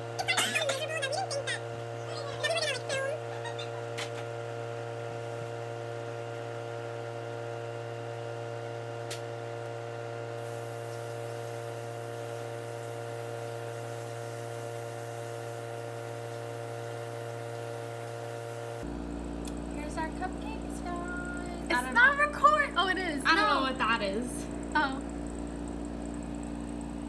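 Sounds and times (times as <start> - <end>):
steady hum of held tones: 0.0 - 27.0.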